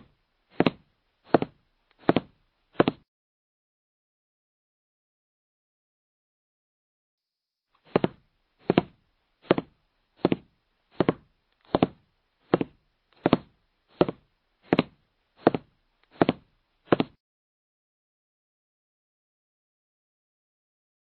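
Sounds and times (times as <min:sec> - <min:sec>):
footsteps on floor: 0:00.5 - 0:03.0, 0:07.8 - 0:17.2.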